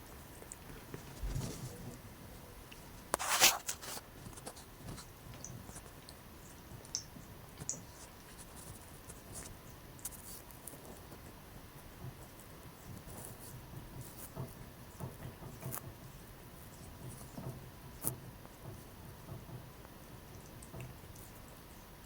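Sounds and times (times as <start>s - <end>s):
cat scratching and scuffing: 0.7s - 2.0s, 3.2s - 5.1s.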